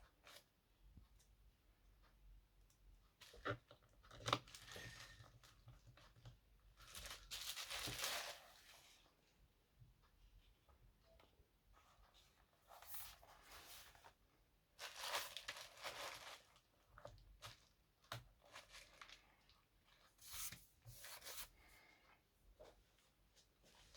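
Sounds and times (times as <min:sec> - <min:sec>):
rustling and crinkling: 0:03.2 - 0:09.2, 0:11.8 - 0:23.9.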